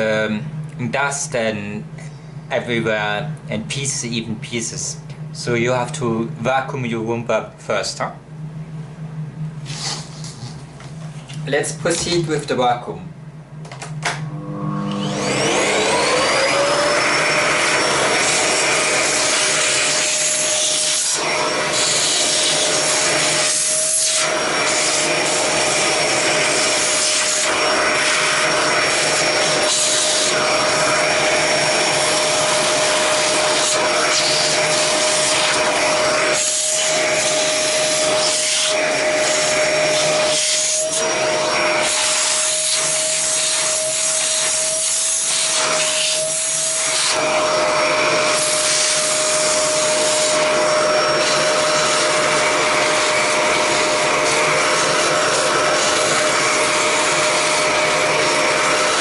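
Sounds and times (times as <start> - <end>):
vacuum cleaner motor whine: 13.3 - 59.0.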